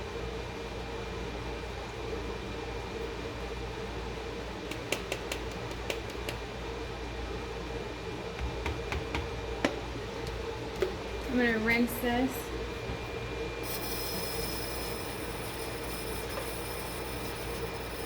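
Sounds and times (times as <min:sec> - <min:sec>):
fan humming: 0:04.0 - 0:18.0.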